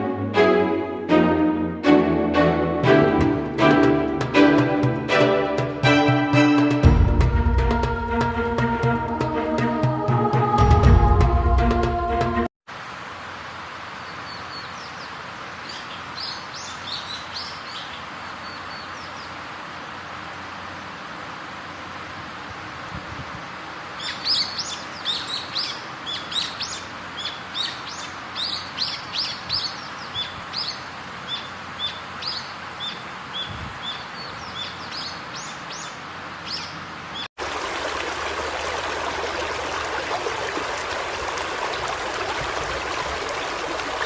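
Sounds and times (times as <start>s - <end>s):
outdoor background hiss: 12.7s - 44.0s
bird chirping: 24.0s - 37.3s.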